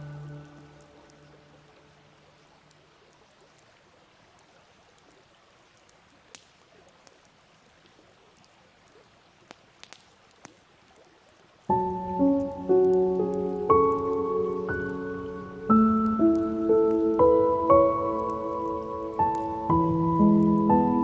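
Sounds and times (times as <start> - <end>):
piano note: 0.0 - 0.9, 11.7 - 21.0
fireplace crackling: 0.0 - 21.0.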